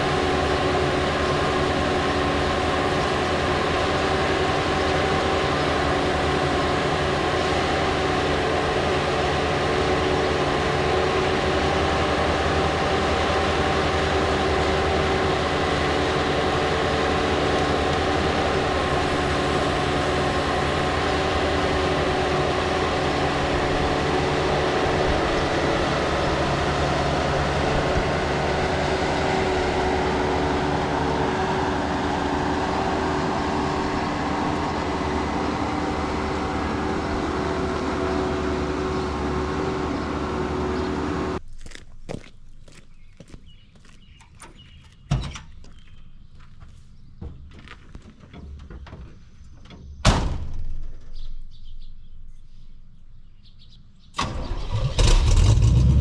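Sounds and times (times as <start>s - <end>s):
diesel engine running steadily: 0.0s - 41.5s, 52.9s - 56.0s.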